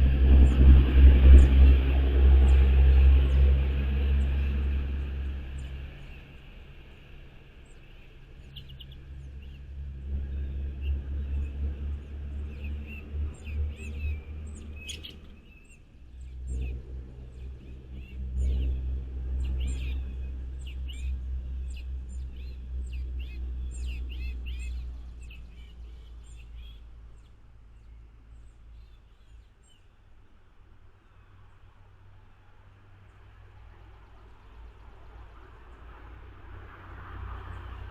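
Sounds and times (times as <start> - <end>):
loud low rumble: 0.0 - 26.7
small birds chirping: 1.4 - 31.7.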